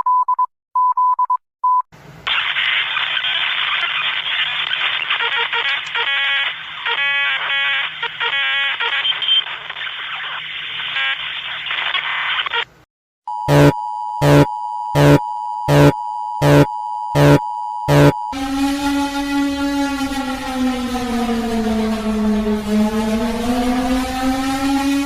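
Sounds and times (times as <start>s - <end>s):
buzzy data tones: 13.5s - 24.1s
high pulsing alert tone: 13.5s - 25.0s.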